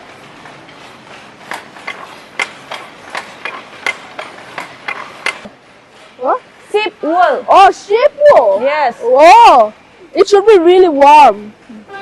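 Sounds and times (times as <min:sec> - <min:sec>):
wooden handloom knocking: 0:00.0 - 0:05.6.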